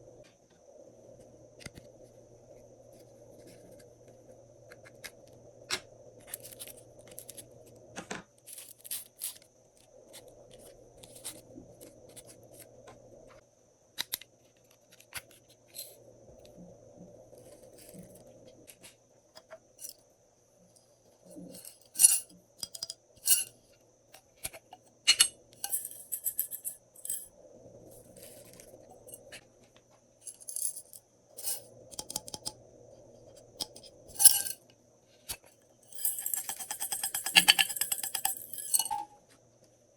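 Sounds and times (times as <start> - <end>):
small objects clinking against container: 35.9 - 39.1.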